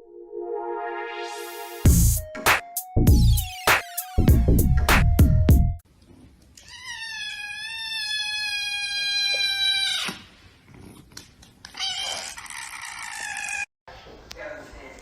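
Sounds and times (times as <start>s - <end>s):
cat meowing: 6.6s - 10.3s, 11.7s - 13.7s.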